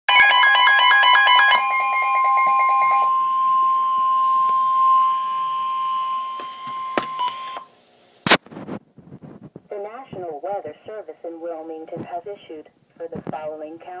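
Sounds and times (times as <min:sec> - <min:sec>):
loud steady alarm tone: 0:00.1 - 0:07.6.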